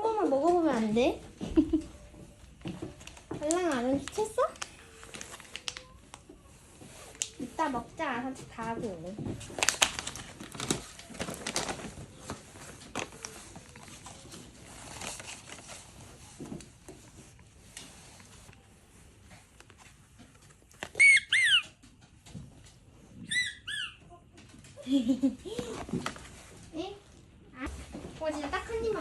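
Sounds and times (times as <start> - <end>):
dog whining: 20.9 - 21.8, 23.2 - 24.3.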